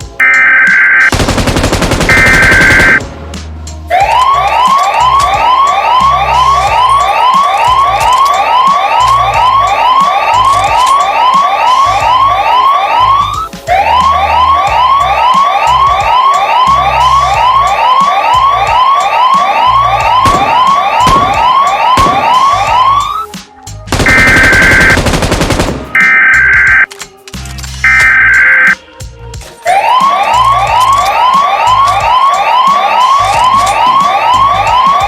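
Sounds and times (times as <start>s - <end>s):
electronic siren yelping: 0.2s - 1.1s, 2.1s - 3.0s, 3.9s - 23.3s, 24.0s - 25.0s, 25.9s - 26.9s, 27.8s - 28.8s, 29.7s - 35.0s.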